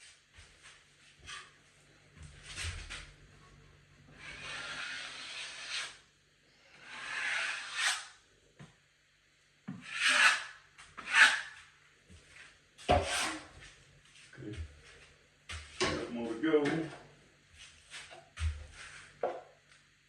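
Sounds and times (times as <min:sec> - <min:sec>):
taping knife scraping drywall: 0:04.2 - 0:06.0, 0:06.8 - 0:08.2, 0:09.8 - 0:11.6, 0:13.0 - 0:13.5.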